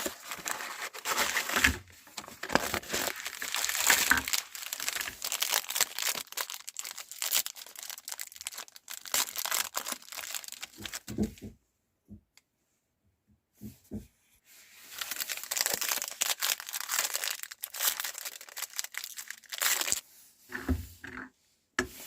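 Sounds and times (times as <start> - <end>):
plastic wrapper crinkling: 0.0 - 11.3, 14.9 - 20.0.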